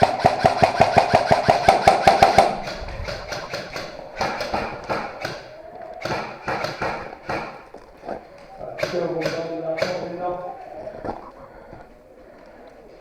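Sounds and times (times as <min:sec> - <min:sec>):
airsoft gun firing rapid burst: 0:00.0 - 0:07.6.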